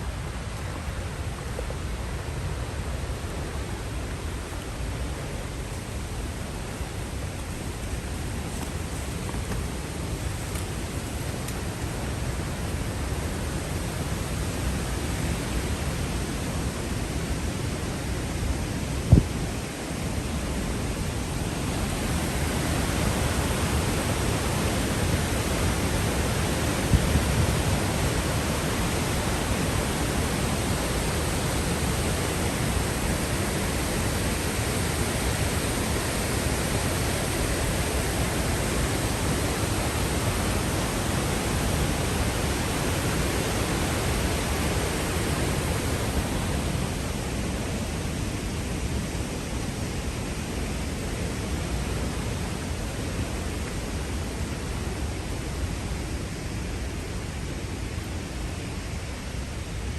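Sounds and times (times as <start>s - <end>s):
waterfall roaring: 0.0s - 59.9s.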